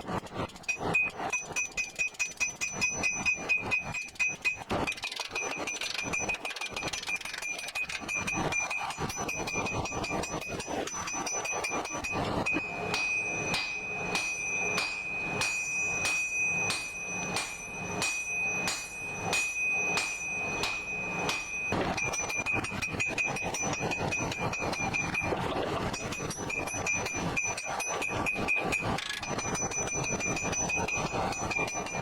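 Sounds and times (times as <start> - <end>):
hammer striking hot steel: 0.7 - 32.0
anvil ringing: 7.4 - 32.0.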